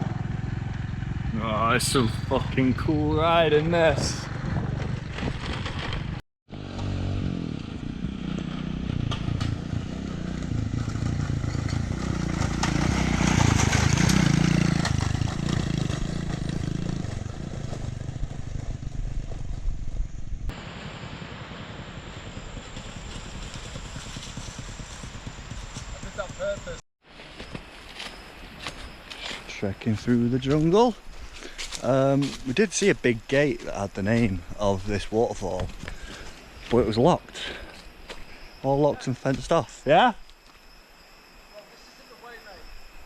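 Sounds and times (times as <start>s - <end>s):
motorbike engine running: 0.0s - 26.8s
clatter from riding: 4.7s - 6.2s, 22.6s - 26.3s.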